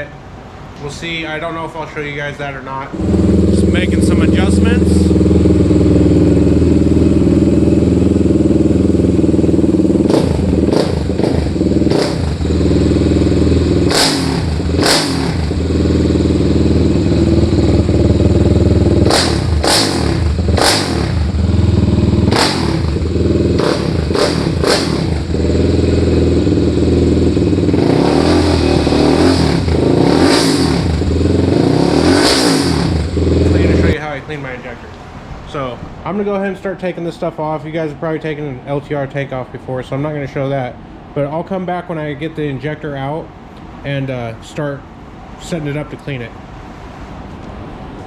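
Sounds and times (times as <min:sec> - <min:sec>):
quad engine idling: 0:03.0 - 0:34.0.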